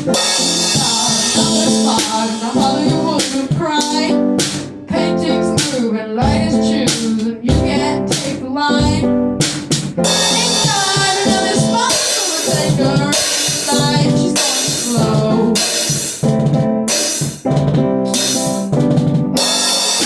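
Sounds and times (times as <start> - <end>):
person singing: 0.0 - 9.2, 10.0 - 16.1
drum kit hits: 0.0 - 20.0.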